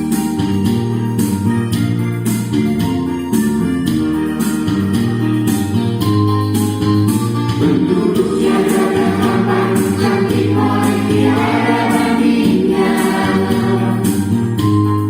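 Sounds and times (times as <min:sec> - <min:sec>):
voices singing: 0:07.6 - 0:14.5.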